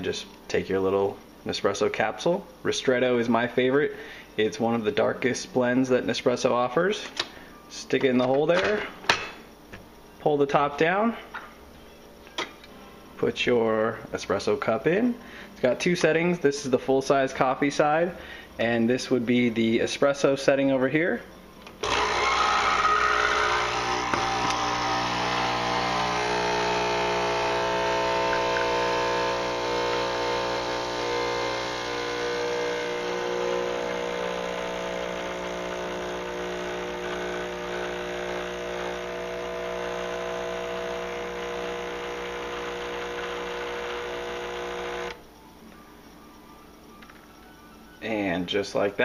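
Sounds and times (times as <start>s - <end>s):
coffee machine pump humming: 21.8s - 45.7s.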